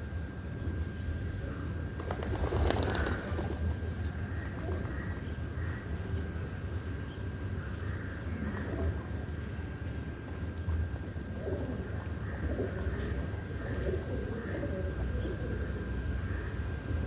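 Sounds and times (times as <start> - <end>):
birds chirping: 0.2 - 9.8.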